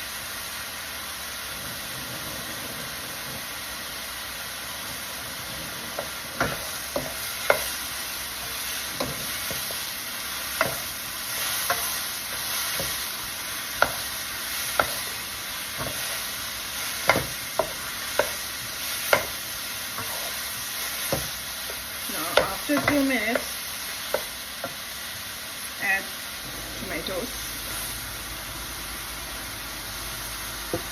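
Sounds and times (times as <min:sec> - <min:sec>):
mushrooms sizzling in oil: 0:00.0 - 0:30.9
utensil knocking against pan: 0:21.1 - 0:23.5.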